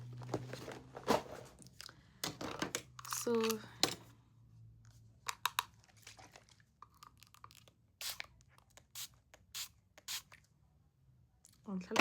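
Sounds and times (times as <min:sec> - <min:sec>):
rustling and crinkling: 0:00.0 - 0:01.8, 0:05.7 - 0:07.1.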